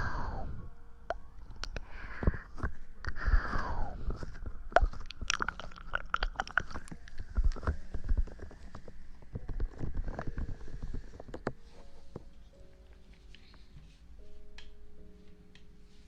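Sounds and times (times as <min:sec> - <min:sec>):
close crackling and clicking: 0:01.1 - 0:13.7.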